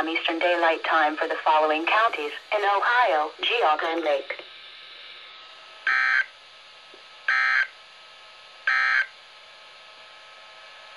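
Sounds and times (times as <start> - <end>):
buzzy digital data tones: 5.8 - 6.3, 7.3 - 7.7, 8.7 - 9.1.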